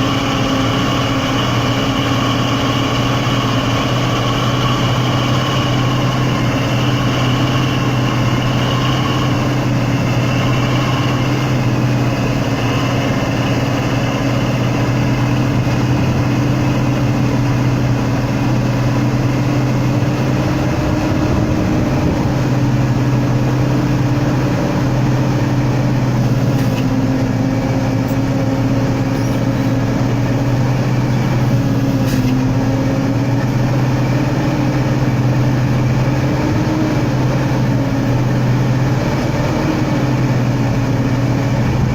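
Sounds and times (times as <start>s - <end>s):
truck engine running: 0.0s - 41.9s.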